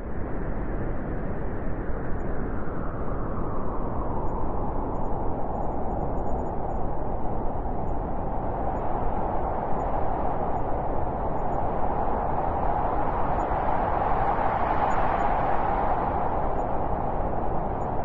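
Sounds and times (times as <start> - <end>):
howling wind: 0.0 - 18.0.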